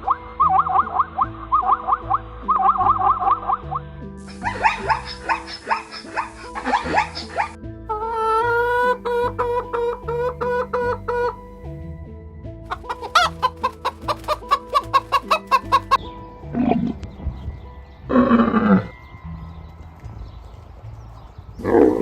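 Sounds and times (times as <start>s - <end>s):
light background music: 0.0s - 22.0s
chicken calls: 0.4s - 11.4s, 12.7s - 17.1s
chicken clucking: 4.5s - 11.4s, 12.7s - 17.1s.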